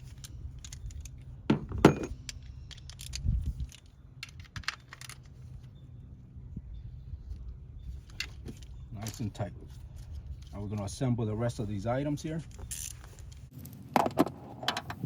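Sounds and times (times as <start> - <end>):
tools clinking on metal: 0.1 - 5.3.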